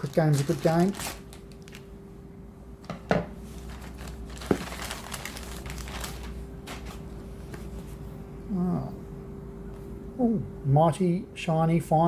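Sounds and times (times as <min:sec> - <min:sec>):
packaging crinkling and rustling: 0:00.0 - 0:01.9, 0:03.5 - 0:07.8
faint steady hum: 0:00.0 - 0:12.0.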